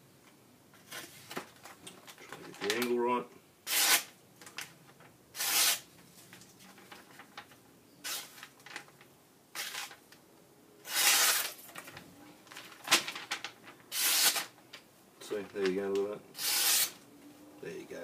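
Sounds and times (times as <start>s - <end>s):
blade slicing paper: 3.7s - 4.1s, 5.4s - 5.9s, 9.6s - 10.0s, 10.9s - 11.6s, 13.9s - 14.5s, 16.4s - 17.0s.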